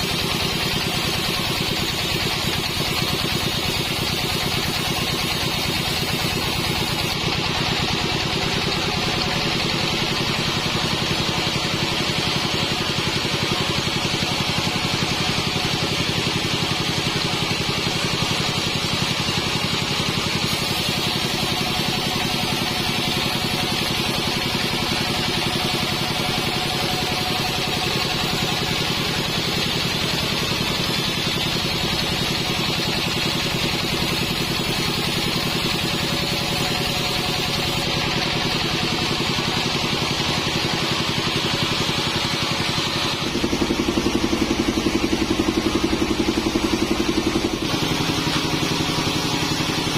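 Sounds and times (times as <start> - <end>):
band sawmill running: 0.0 - 49.9.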